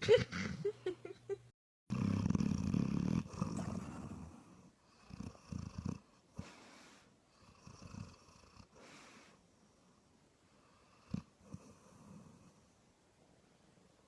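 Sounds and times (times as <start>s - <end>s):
puppy snoring: 1.9s - 6.7s, 7.3s - 9.3s, 10.6s - 12.7s.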